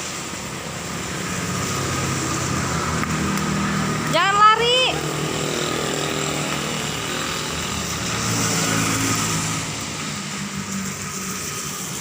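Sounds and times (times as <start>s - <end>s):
small engine humming: 4.3s - 12.0s.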